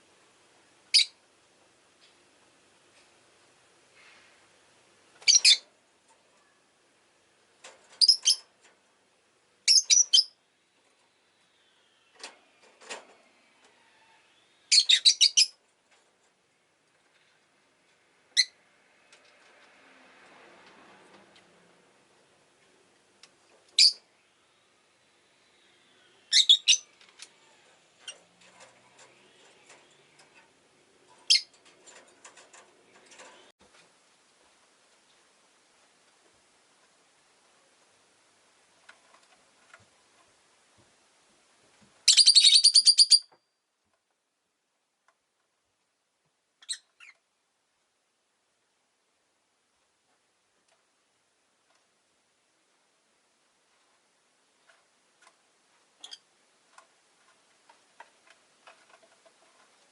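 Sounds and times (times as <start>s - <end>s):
lovebird sharp high chirps: 0.9s - 1.2s, 5.2s - 5.6s, 8.0s - 8.4s, 9.7s - 10.4s, 14.7s - 15.6s, 26.3s - 26.9s, 42.1s - 43.3s
lovebirds chirping: 0.9s - 1.2s, 5.2s - 5.7s, 8.0s - 8.5s, 9.6s - 10.4s, 14.0s - 15.6s, 23.8s - 28.2s, 42.0s - 43.4s, 46.6s - 47.2s.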